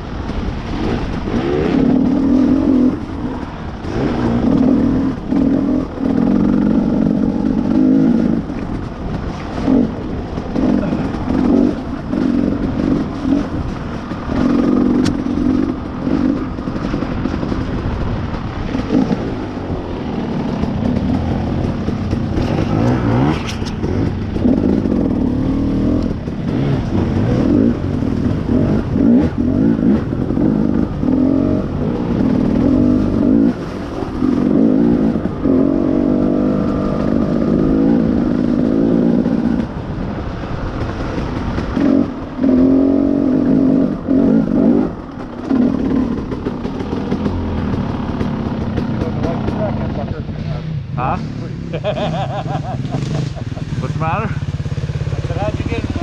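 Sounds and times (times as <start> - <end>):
dirt bike engine revving: 0.0 - 56.0.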